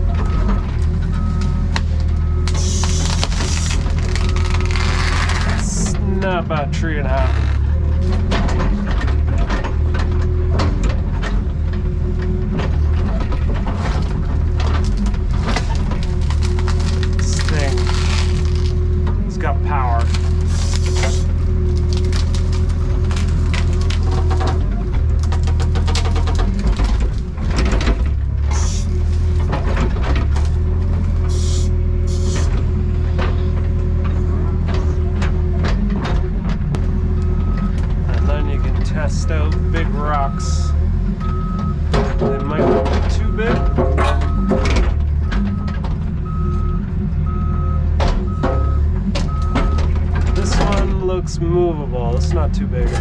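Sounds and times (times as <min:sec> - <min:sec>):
excavator diesel engine: 0:00.0 - 0:53.0
wood cracking and snapping: 0:01.4 - 0:05.8, 0:13.0 - 0:19.2, 0:19.9 - 0:28.2
hydraulic whine: 0:02.1 - 0:06.2.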